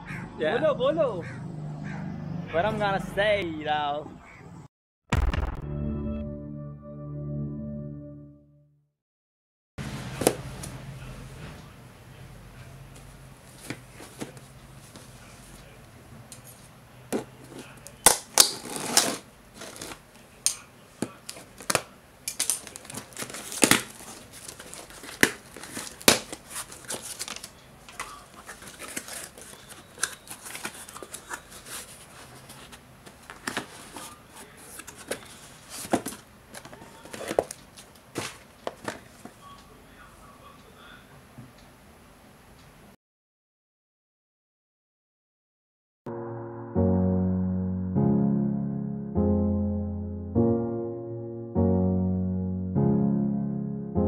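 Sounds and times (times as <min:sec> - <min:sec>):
plastic packaging crinkling: 0:18.0 - 0:20.0, 0:21.0 - 0:39.1
clicks and knocks of small objects: 0:19.6 - 0:31.4.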